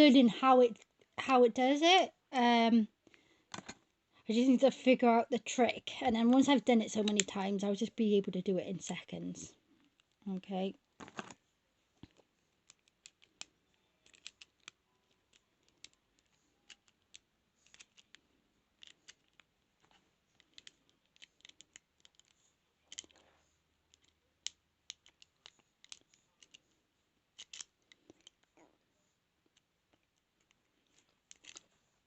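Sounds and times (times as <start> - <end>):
lock picks clicking in padlock: 27.4 - 27.7.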